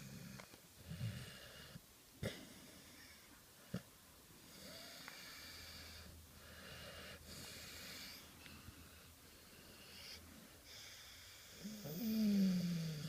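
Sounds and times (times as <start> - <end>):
dog snoring softly: 4.5 - 13.0.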